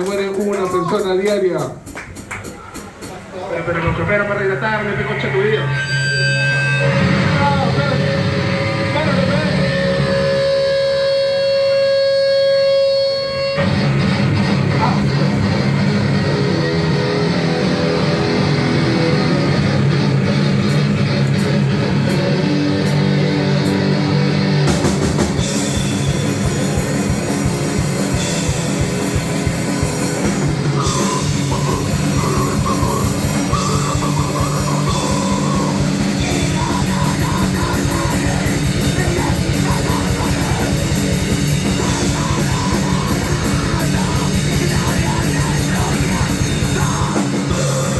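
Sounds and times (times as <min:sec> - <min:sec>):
very fast drumming: 0:00.0 - 0:03.3, 0:24.6 - 0:47.9
distorted guitar: 0:02.9 - 0:47.9.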